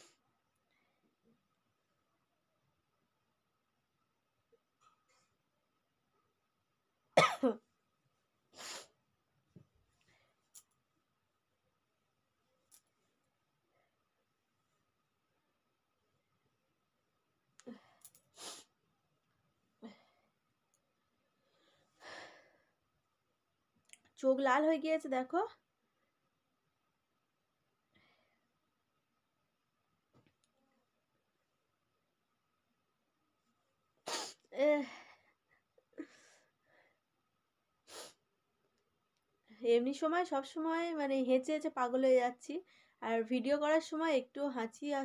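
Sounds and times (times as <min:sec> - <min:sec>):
woman sniffing and huffing: 0:08.6 - 0:09.0, 0:18.0 - 0:18.8, 0:34.0 - 0:34.5.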